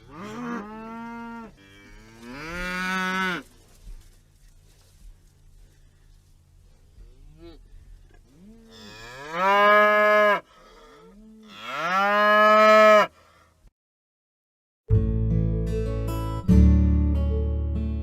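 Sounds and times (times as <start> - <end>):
cow mooing: 0.0 - 3.4, 8.3 - 13.1.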